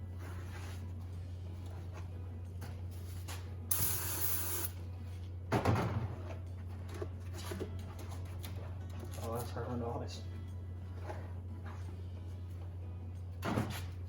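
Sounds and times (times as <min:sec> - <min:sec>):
aerosol spray hissing: 0:03.7 - 0:04.7.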